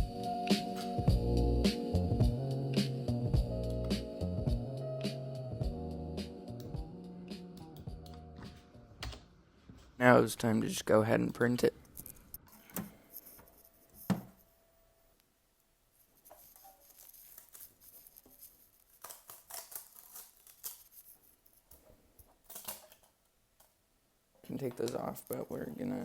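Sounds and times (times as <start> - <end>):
handling scrapes and rustles: 16.0 - 21.8.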